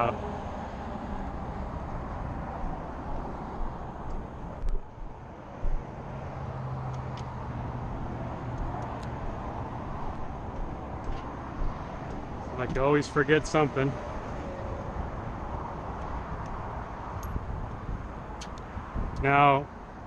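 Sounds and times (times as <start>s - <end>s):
low engine drone: 0.0s - 19.8s
road traffic noise: 0.0s - 20.0s.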